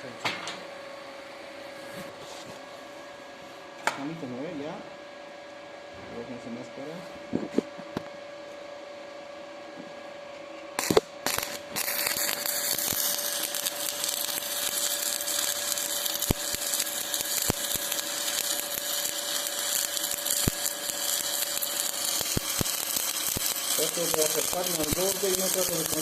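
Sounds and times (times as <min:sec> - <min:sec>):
welding arc crackling: 0:10.8 - 0:26.0
welding arc striking pops: 0:10.8 - 0:26.0.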